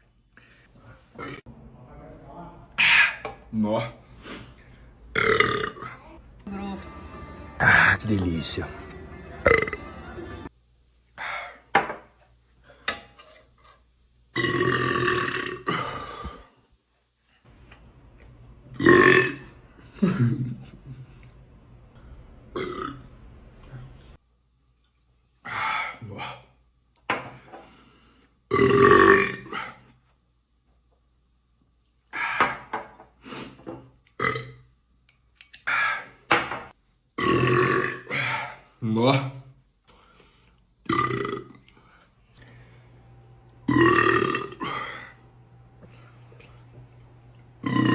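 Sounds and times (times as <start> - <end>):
man burping loudly: 5.1 - 6.0, 9.5 - 9.8, 14.4 - 16.4, 18.8 - 20.5, 22.5 - 23.0, 28.5 - 29.8, 34.2 - 34.6, 37.2 - 38.5, 40.9 - 41.6, 43.7 - 45.2, 47.6 - 47.9.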